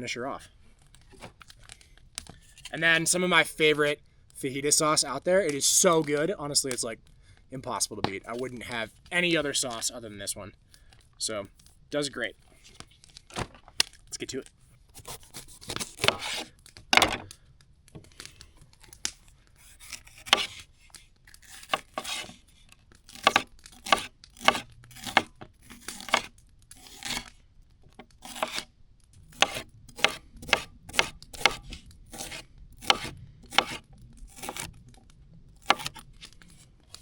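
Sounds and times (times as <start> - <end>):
knife cutting bell pepper: 15.0 - 17.2, 19.6 - 20.7, 21.3 - 22.5, 23.1 - 27.4, 28.0 - 28.7, 29.3 - 34.8, 35.6 - 37.0.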